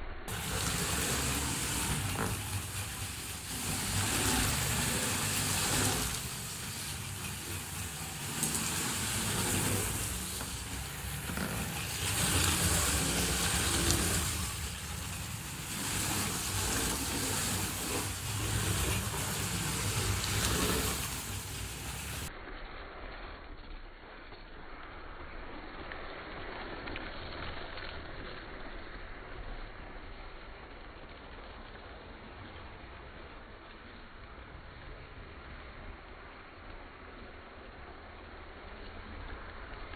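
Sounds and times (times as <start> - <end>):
toy car electric motors whirring: 0.3 - 30.3.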